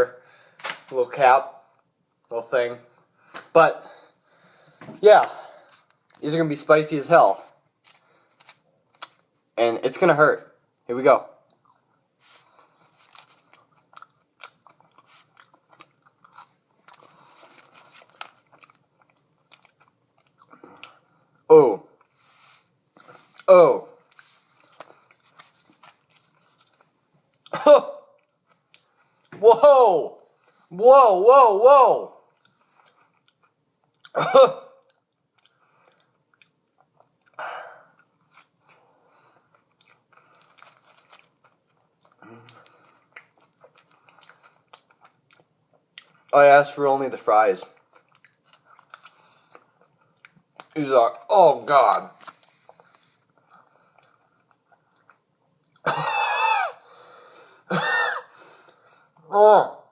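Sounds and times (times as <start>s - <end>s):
person chewing crunchy fries: 7.6s - 9.4s, 11.4s - 29.4s, 32.2s - 51.0s, 51.6s - 56.0s.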